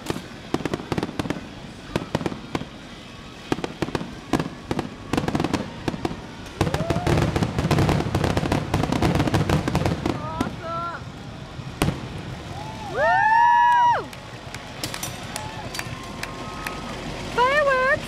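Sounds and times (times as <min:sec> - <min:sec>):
fireworks booms: 0:00.0 - 0:10.8, 0:11.6 - 0:12.8
fireworks bangs and crackles: 0:00.0 - 0:18.0.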